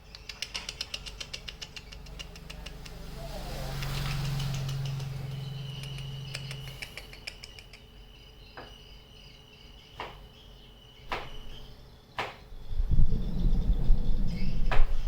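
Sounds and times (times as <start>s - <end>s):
loud low rumble: 1.7s - 6.9s, 12.7s - 15.0s
high-pitched insect trill: 2.0s - 14.7s
sharp knocks: 10.0s - 10.3s, 11.1s - 11.4s, 12.2s - 12.5s.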